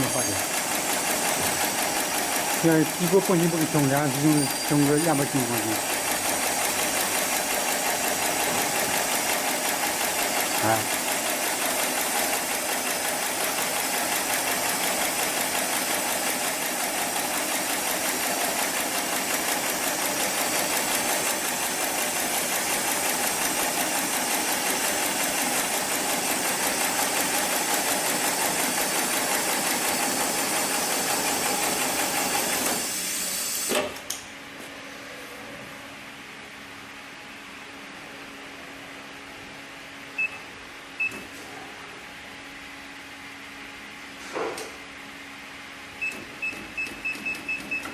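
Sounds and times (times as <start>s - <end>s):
sewing machine stitching: 0.0s - 33.0s
steady machine hum: 0.0s - 46.5s.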